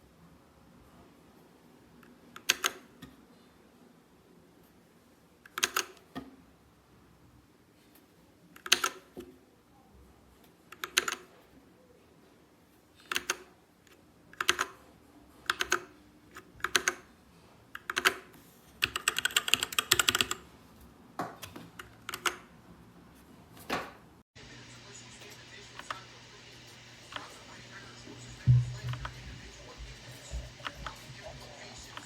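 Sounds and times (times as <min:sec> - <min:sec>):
mechanical keyboard typing: 0:02.4 - 0:02.8, 0:05.5 - 0:06.0, 0:08.6 - 0:09.0, 0:10.7 - 0:11.3, 0:13.0 - 0:13.5, 0:14.4 - 0:14.8, 0:15.4 - 0:17.0, 0:17.8 - 0:20.4, 0:21.8 - 0:22.4.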